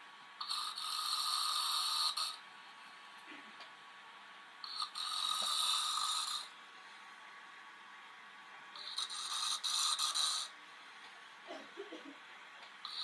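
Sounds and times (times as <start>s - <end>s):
man snoring: 0.4s - 2.4s, 4.7s - 6.5s, 8.8s - 10.5s.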